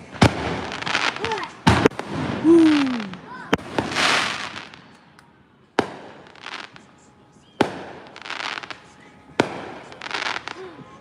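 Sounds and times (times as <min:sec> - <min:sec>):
fireworks bangs: 0:00.0 - 0:04.9, 0:05.8 - 0:10.6
fireworks crackling: 0:00.0 - 0:05.2, 0:05.8 - 0:11.0.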